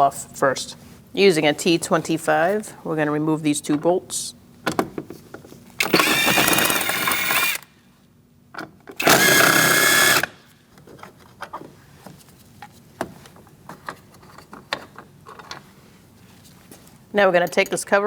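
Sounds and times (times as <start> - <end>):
cordless power driver running: 5.8 - 7.7, 9.0 - 10.4.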